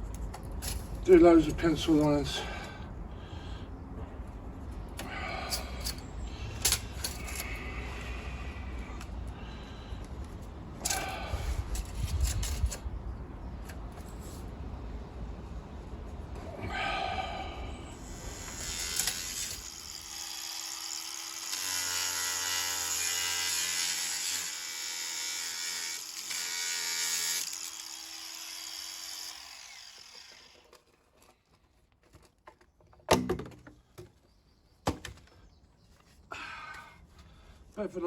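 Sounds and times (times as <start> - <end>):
power tool cutting plastic pipe: 18.2 - 30.7.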